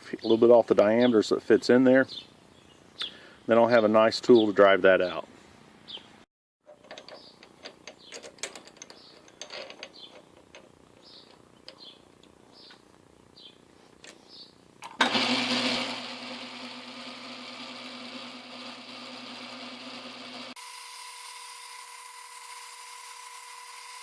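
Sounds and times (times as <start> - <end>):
tool handling clicks and knocks: 6.6 - 11.9
lathe motor humming: 15.1 - 24.0.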